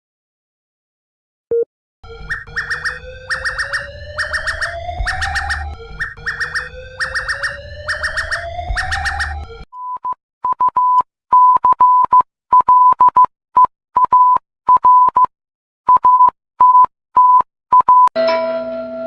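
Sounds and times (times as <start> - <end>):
alarm beeps like morse code: 1.5 - 13.3.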